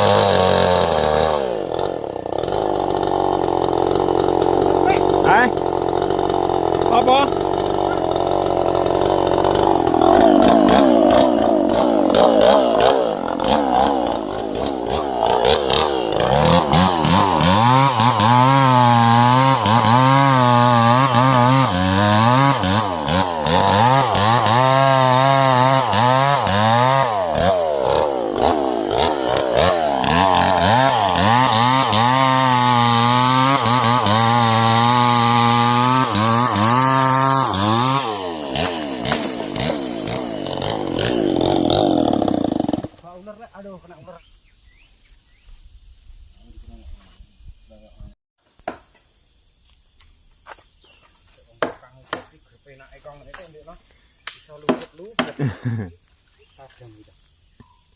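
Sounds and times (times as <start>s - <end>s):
chainsaw cutting wood: 0.0s - 43.1s, 54.2s - 55.9s.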